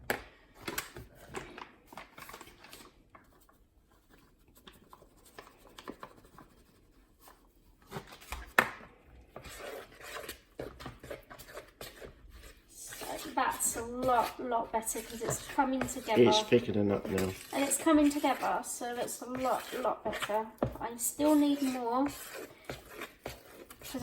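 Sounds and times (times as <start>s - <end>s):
metal spoon scraping in bowl: 9.4s - 24.0s.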